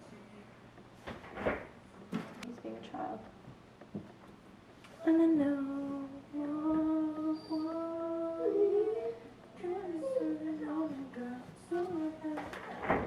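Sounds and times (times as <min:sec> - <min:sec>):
woman singing unaccompanied: 0:04.9 - 0:13.0.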